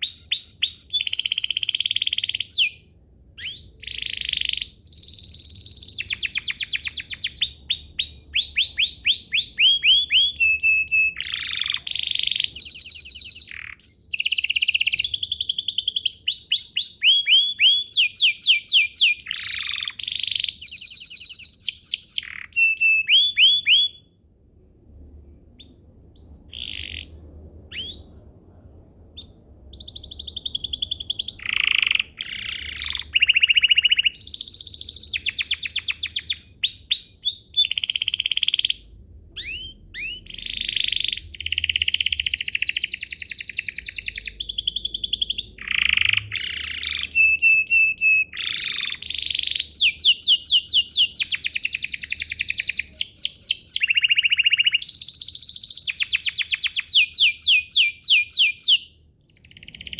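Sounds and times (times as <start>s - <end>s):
canary singing trills and whistles: 0.0s - 24.2s, 25.6s - 28.3s, 29.2s - 59.9s.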